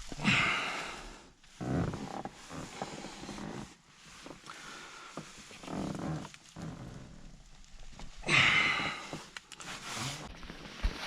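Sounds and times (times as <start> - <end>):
person straining grunts: 0.2 - 1.0, 8.2 - 9.2.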